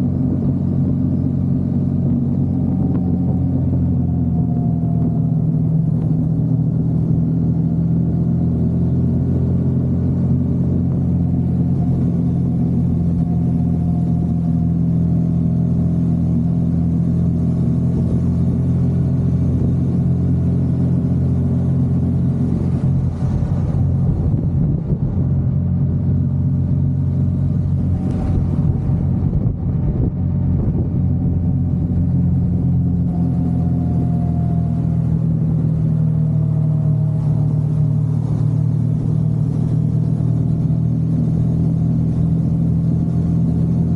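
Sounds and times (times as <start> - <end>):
vehicle engine droning: 0.0 - 43.9.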